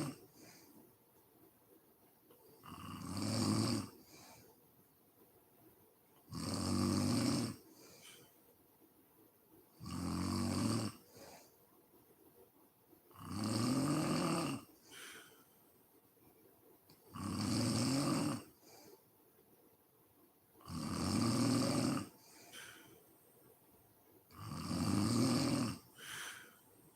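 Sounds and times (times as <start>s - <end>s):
woman snoring: 0.0s - 0.6s, 2.6s - 4.0s, 6.3s - 8.2s, 9.8s - 11.0s, 13.2s - 15.2s, 17.1s - 18.8s, 20.6s - 22.8s, 24.3s - 26.6s
soft breath: 4.0s - 4.7s, 7.7s - 8.6s, 14.7s - 16.4s, 18.6s - 19.2s, 22.1s - 23.5s, 25.9s - 26.9s.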